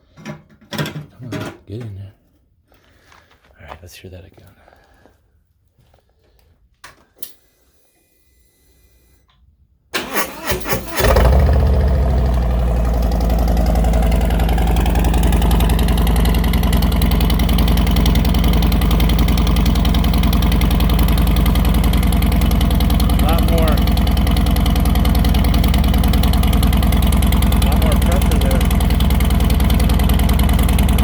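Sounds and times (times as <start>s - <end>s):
motorcycle engine starting and idling: 10.0s - 31.0s.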